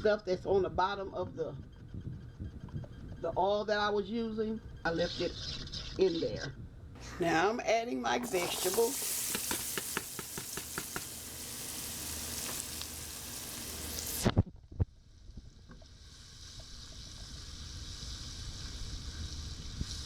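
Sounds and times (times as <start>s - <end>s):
vegetables sizzling in oil: 8.2s - 14.3s.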